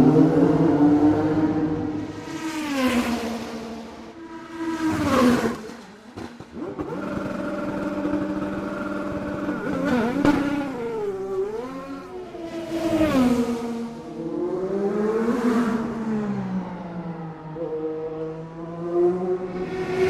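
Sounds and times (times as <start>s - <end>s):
race car passing by: 0.0s - 20.0s
race car engine revving: 4.7s - 16.8s, 17.7s - 20.0s.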